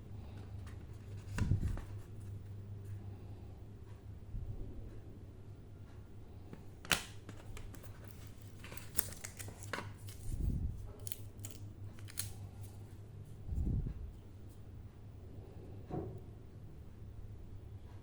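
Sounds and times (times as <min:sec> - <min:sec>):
steady low hum: 0:00.0 - 0:18.0
packaging clicks and rustling: 0:06.6 - 0:10.4, 0:11.0 - 0:12.8.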